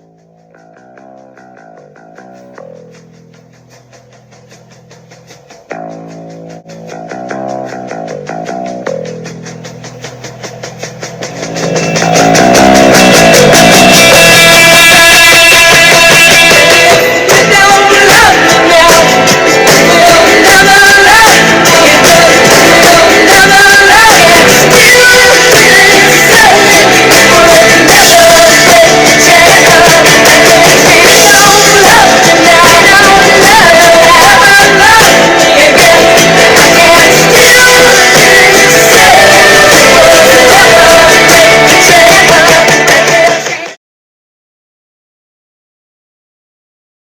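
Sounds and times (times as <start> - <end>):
loud rock song: 5.5 - 43.8
person singing: 11.5 - 43.8.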